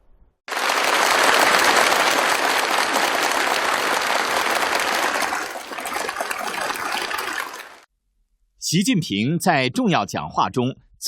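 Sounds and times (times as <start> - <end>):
audience applauding: 0.5 - 7.8.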